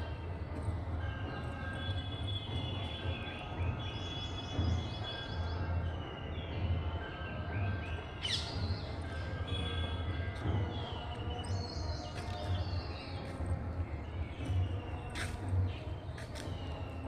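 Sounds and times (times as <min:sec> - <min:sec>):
birds chirping and trilling: 0:07.5 - 0:17.0.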